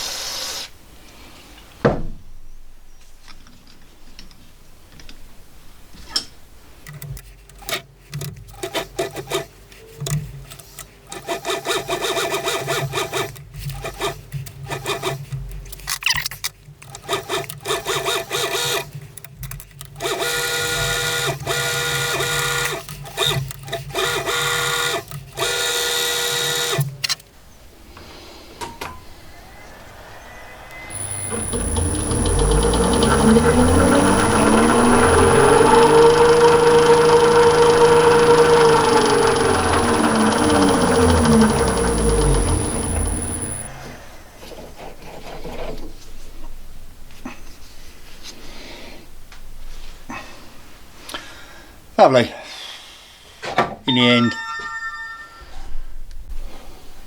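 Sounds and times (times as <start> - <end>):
knock: 1.8 - 2.2
metal cutting noise: 19.9 - 26.9, 30.8 - 43.8
lathe motor hum: 20.0 - 23.2, 24.0 - 26.8, 30.9 - 43.7.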